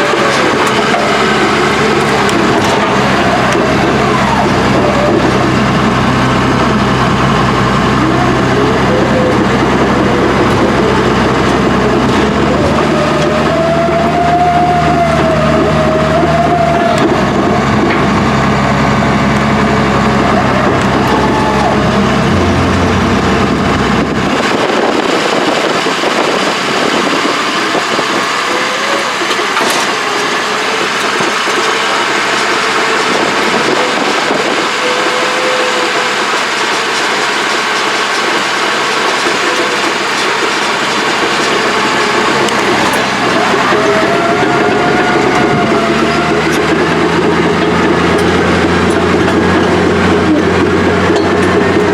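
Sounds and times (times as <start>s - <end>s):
diesel engine running: 0.0s - 51.9s
deep low rumble: 17.0s - 25.7s.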